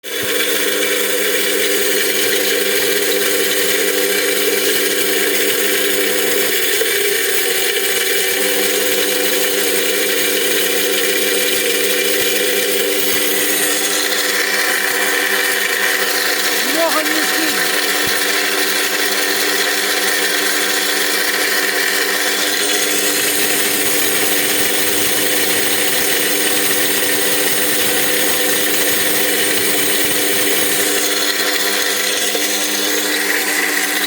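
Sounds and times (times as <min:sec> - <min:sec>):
angle grinder driving grain crusher: 0:10.4 - 0:34.0.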